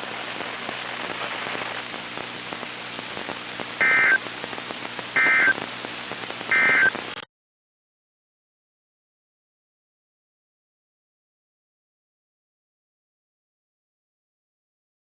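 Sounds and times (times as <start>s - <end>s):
radio static hiss: 0.0s - 7.3s
digital data tone bursts: 3.8s - 4.2s, 5.2s - 5.6s, 6.5s - 7.1s.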